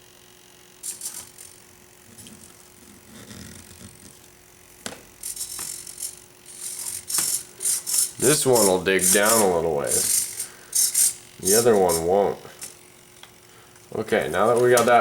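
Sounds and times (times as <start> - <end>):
faint steady hum: 0.0 - 15.0
plastic toy rattling and clicking: 0.8 - 1.6, 5.2 - 12.8.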